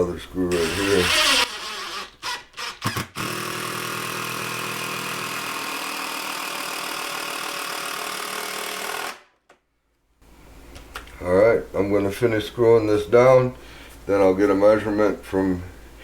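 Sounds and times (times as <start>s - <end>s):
power drill driving a screw: 0.5s - 9.2s.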